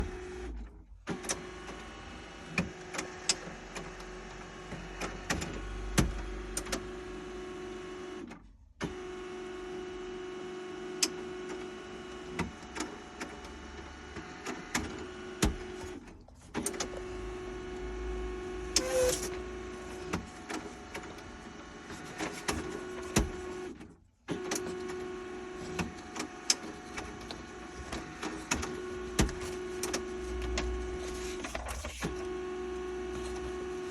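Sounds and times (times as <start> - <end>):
printer clicks and clacks: 1.1 - 7.2, 10.9 - 17.1, 18.8 - 32.4
printer motor hum: 16.7 - 23.8, 24.4 - 33.9.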